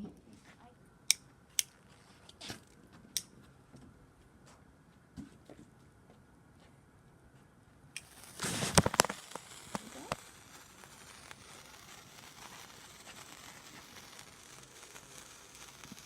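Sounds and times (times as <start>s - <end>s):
sparkler fizzing: 8.0s - 16.0s
sparkler flaring and cracking: 8.0s - 16.0s.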